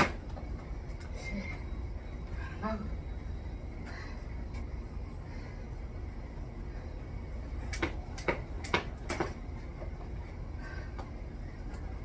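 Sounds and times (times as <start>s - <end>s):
steady low rumble: 0.0s - 12.0s
jump rope slapping ground: 7.6s - 10.1s.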